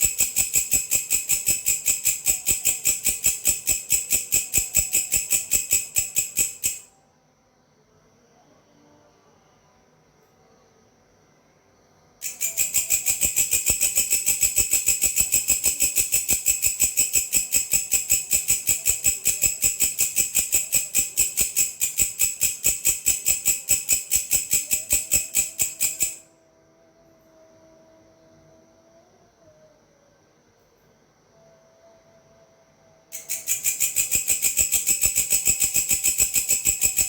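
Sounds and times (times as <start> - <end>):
grasshopper calling: 0.0 - 6.9, 12.2 - 26.3, 33.2 - 37.0.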